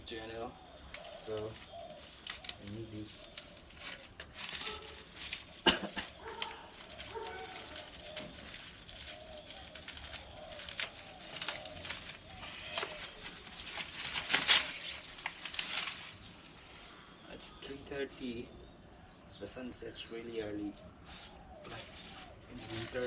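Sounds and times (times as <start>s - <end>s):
birds cooing: 0.0s - 23.0s
bicycle parts clicking and rattling: 0.9s - 16.3s.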